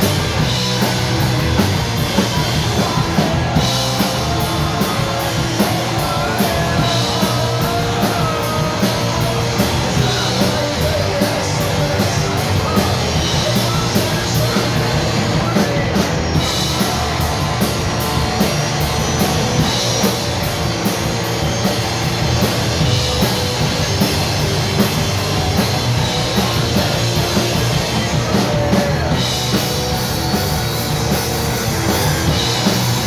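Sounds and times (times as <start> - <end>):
drum kit beat: 0.0 - 33.0
rock band playing: 0.0 - 33.0.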